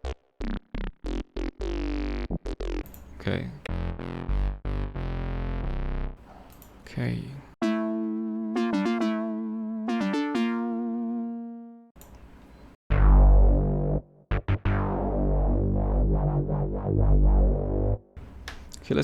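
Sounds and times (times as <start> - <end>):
deep synthesizer bass notes: 0.0 - 2.9, 3.5 - 6.2, 7.6 - 11.9, 12.9 - 18.2
synthesizer notes: 3.7 - 6.2, 7.6 - 12.0, 12.9 - 18.2.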